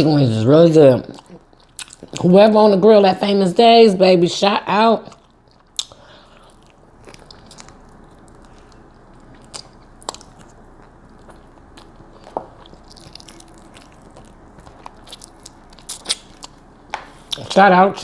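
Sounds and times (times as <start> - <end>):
chewing and biting chicken wing: 5.1 - 17.4.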